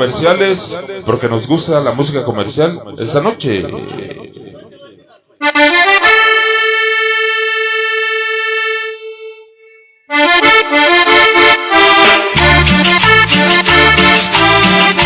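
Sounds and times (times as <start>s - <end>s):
accordion: 0.0s - 2.0s, 5.4s - 15.0s
bass and drums: 12.4s - 15.0s.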